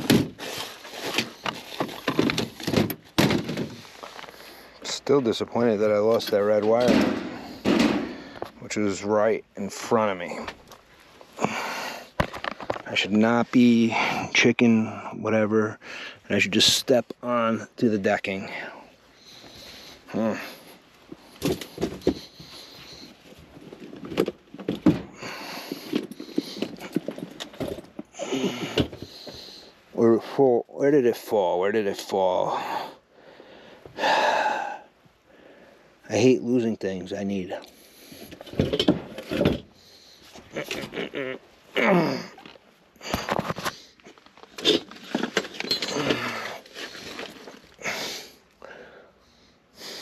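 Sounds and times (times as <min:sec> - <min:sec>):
rustling and scraping: 0:00.0 - 0:09.0, 0:12.1 - 0:14.1, 0:19.2 - 0:30.0, 0:37.5 - 0:47.9.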